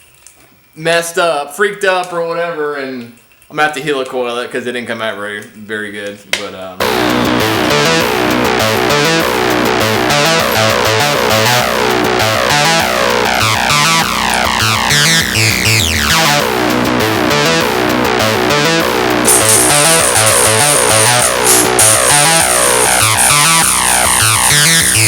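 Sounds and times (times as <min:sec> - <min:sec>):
electronic synthesizer music: 0:06.8 - 0:25.0
rhythmic bass line: 0:06.8 - 0:25.0.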